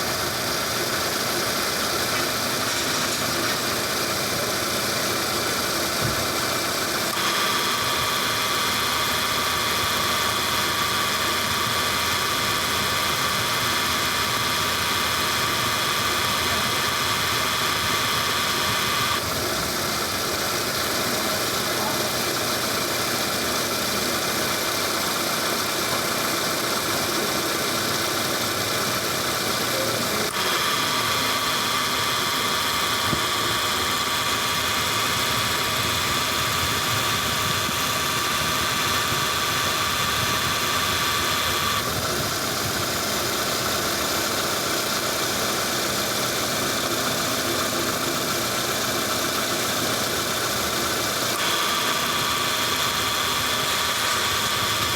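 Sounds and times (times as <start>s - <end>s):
car engine idling: 0.0s - 54.9s
compressor rough growling: 0.0s - 54.9s
bright hissing: 1.9s - 4.6s.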